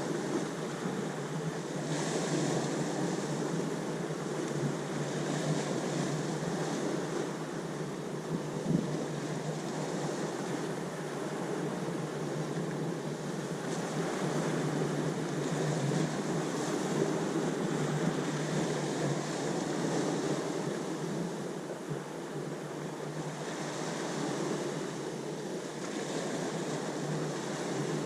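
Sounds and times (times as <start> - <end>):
ocean waves surf: 0.0 - 28.0.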